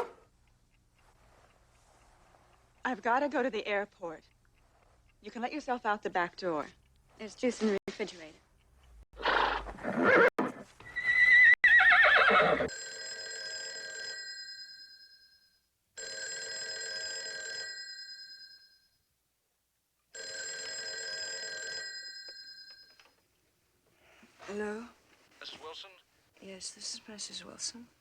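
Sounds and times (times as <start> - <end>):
horse whinnying: 9.2 - 12.7
telephone bell ringing: 12.7 - 19.0, 20.1 - 23.2.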